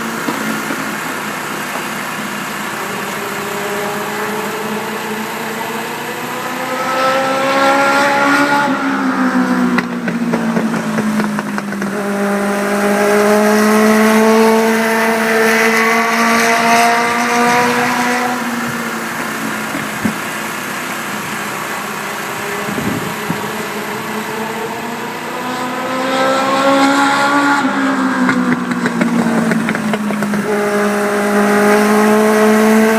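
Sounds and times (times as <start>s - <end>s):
race car engine accelerating: 0.0s - 32.9s.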